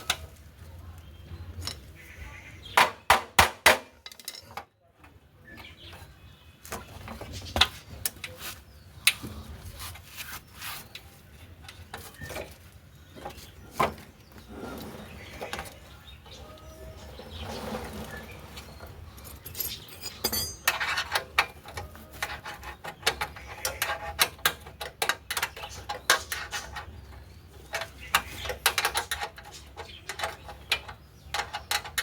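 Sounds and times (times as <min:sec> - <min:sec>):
tools and parts knocking: 0:02.8 - 0:04.7, 0:18.6 - 0:26.9, 0:27.6 - 0:32.0.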